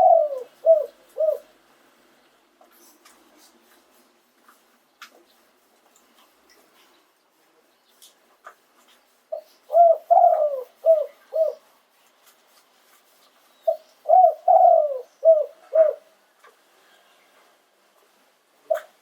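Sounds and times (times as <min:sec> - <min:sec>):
dove cooing: 0:00.0 - 0:01.5, 0:09.3 - 0:11.6, 0:13.7 - 0:16.1, 0:18.7 - 0:19.0.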